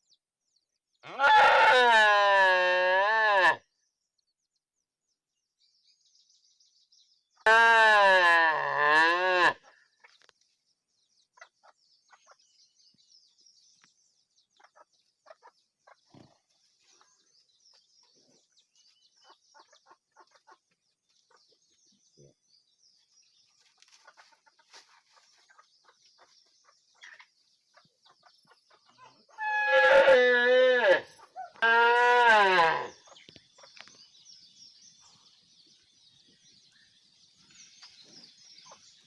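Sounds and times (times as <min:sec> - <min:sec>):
faint chirps and clicks: 0:10.0 - 0:10.6, 0:13.7 - 0:14.0, 0:33.1 - 0:34.4.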